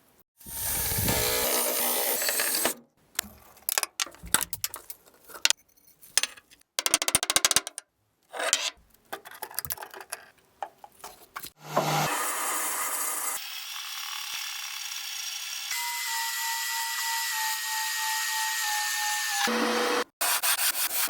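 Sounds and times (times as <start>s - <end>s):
power tool running: 0.5s - 2.8s, 11.6s - 16.6s, 19.4s - 20.0s.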